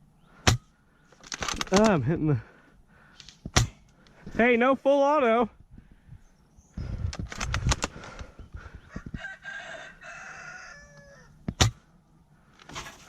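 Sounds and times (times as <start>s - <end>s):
sharp cracks: 0.4s - 2.0s
rooster crowing: 8.8s - 11.4s.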